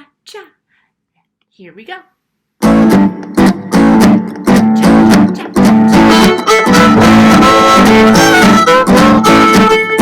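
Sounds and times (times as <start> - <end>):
guitar-led instrumental dance music: 2.6 - 10.0.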